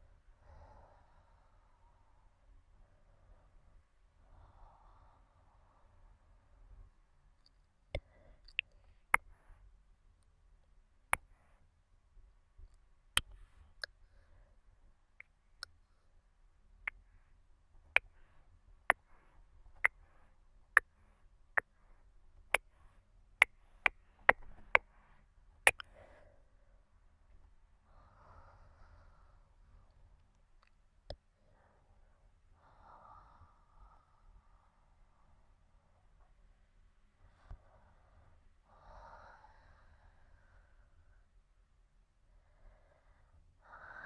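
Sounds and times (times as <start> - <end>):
sharp mouth clicks: 8.0 - 9.3, 25.7 - 25.9.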